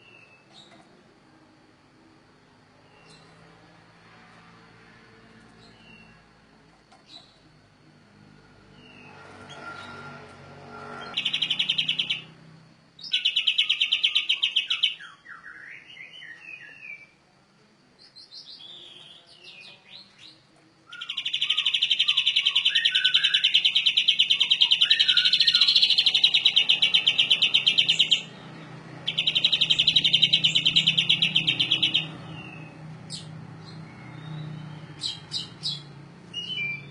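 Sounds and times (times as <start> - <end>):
canary singing high trills: 10.8 - 17.2, 18.2 - 36.9.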